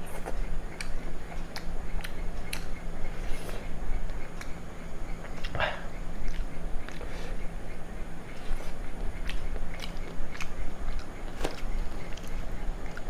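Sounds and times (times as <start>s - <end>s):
steady low hum: 0.0s - 13.0s
wet chewing mouth sounds: 0.0s - 13.0s
lip smacks and clicks: 0.2s - 2.8s.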